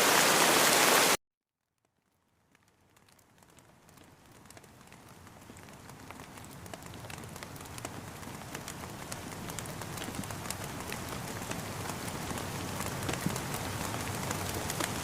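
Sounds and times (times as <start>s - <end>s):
rain falling: 0.0s - 1.2s, 1.9s - 15.0s.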